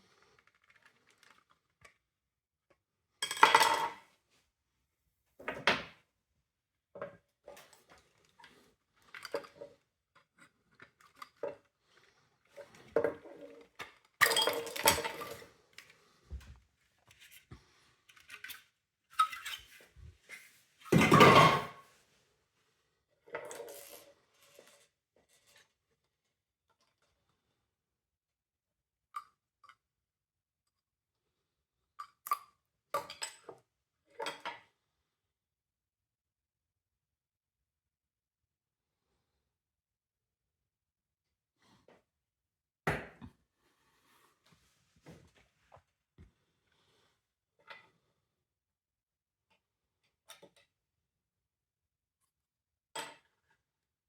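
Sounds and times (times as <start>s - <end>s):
plastic parts and tools clattering: 12.6s - 15.9s, 20.8s - 21.8s.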